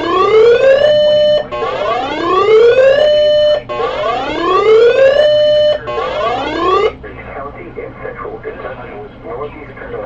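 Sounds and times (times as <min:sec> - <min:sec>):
electronic alert tone whooping: 0:00.0 - 0:07.0.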